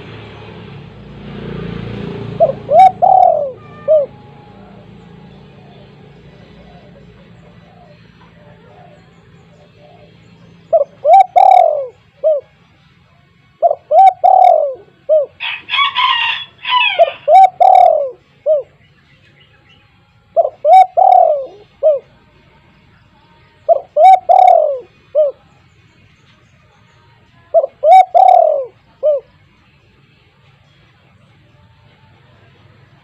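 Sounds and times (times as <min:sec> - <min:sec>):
dove cooing: 0:02.1 - 0:12.6, 0:13.6 - 0:18.8, 0:20.4 - 0:22.1, 0:23.7 - 0:25.4, 0:27.5 - 0:29.4.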